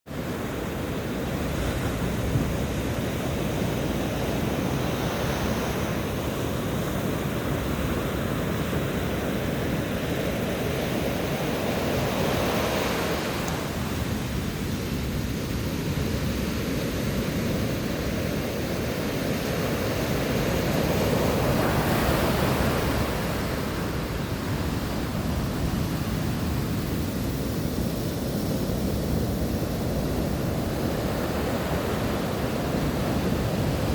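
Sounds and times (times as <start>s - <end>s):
waves breaking: 0.2s - 33.9s
wind buffeting microphone: 0.2s - 33.9s.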